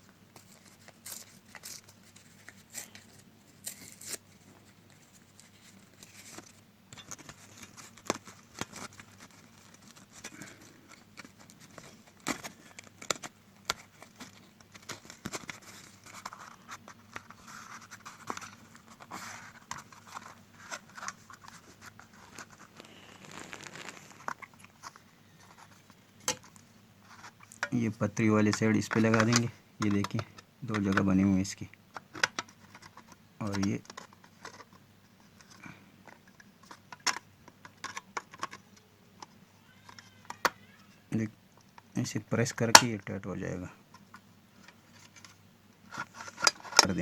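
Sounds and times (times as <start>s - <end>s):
rustling scrapes of casing: 0.4s - 27.7s, 31.9s - 38.8s, 43.9s - 47.0s
small parts clicking and knocking: 35.4s - 40.6s.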